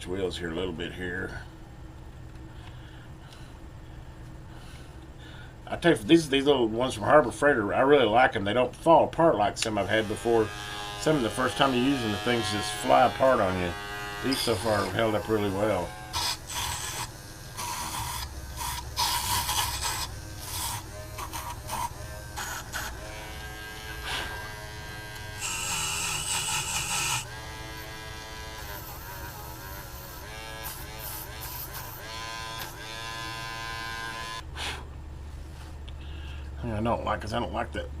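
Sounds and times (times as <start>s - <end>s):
rotary tool whine: 9.8s - 34.8s
wire wheel brushing: 13.4s - 17.1s.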